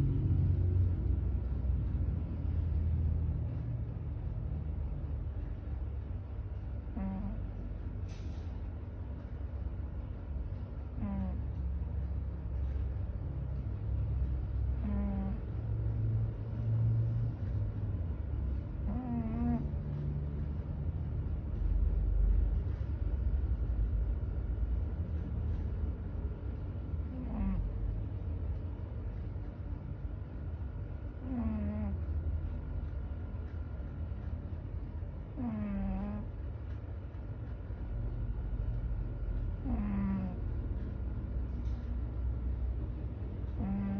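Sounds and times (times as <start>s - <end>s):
cat snoring: 6.7s - 7.5s, 10.9s - 11.5s, 14.7s - 15.5s, 18.8s - 19.7s, 27.0s - 27.7s, 31.1s - 32.0s, 35.3s - 36.3s, 39.5s - 40.4s, 43.4s - 43.9s.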